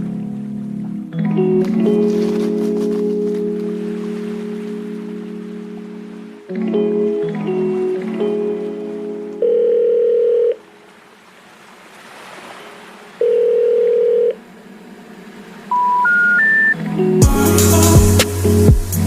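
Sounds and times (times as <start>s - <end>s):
background music of sustained chords: 0.0s - 11.4s, 14.3s - 19.0s
flat steady tone: 13.2s - 14.4s, 15.7s - 18.2s
short beeps rising in pitch: 15.7s - 16.8s.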